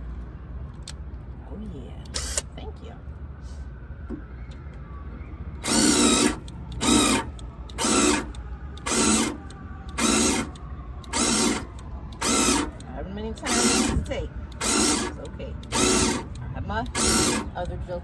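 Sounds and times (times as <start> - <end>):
cordless drill drilling sheet metal: 5.6 - 12.8, 13.4 - 17.7.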